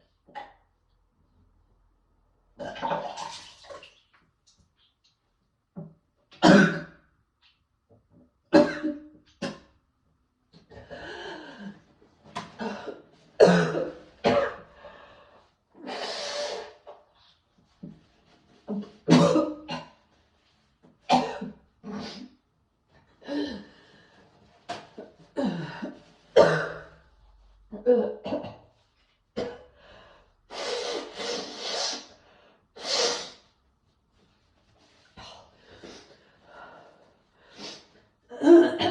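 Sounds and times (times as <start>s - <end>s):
person coughing: 6.4s - 6.9s, 8.5s - 9.7s, 12.6s - 14.7s, 19.1s - 20.0s, 21.1s - 22.0s, 26.4s - 27.0s, 38.4s - 38.9s.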